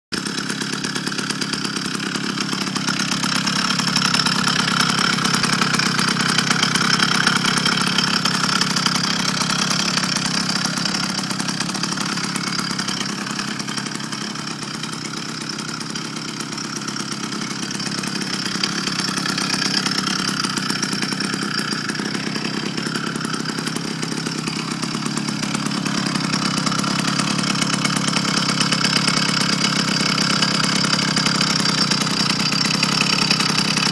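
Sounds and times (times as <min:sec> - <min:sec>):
small motorbike engine idling: 0:00.1 - 0:33.9.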